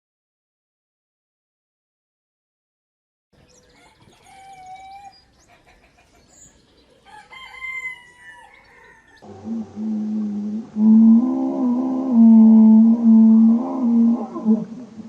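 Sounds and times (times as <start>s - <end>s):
chicken clucking: 3.4s - 9.8s
rooster crowing: 3.7s - 5.2s, 7.0s - 14.7s
low drawn-out sound: 9.2s - 15.0s.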